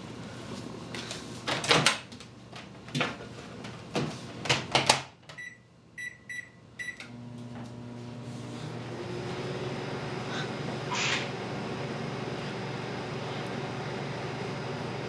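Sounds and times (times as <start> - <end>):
microwave oven humming: 5.3 - 15.0
short keypad beeps: 5.4 - 7.0.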